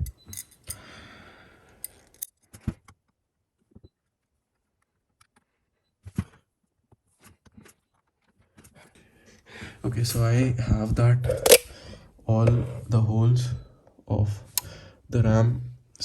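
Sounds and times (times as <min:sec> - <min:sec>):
hardware rustling: 0:00.0 - 0:00.9, 0:11.2 - 0:11.7
light metallic clicks: 0:11.3 - 0:11.7.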